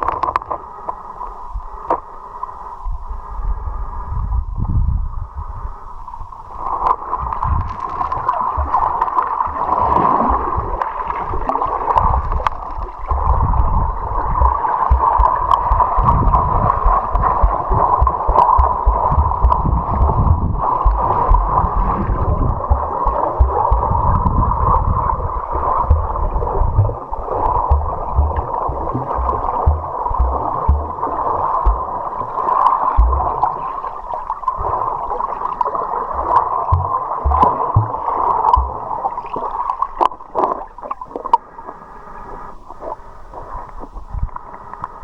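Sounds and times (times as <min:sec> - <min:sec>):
river water gurgling and rushing: 0:06.6 - 0:40.2
low knocks of water: 0:06.8 - 0:34.9, 0:35.5 - 0:39.8.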